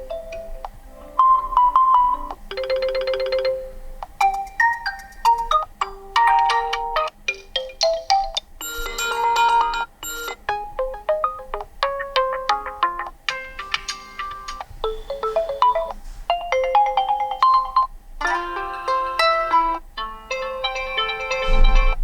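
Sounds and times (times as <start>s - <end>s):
rapidly repeated notes: 0.0s - 16.0s
electronic ringtone melodies: 0.0s - 22.0s.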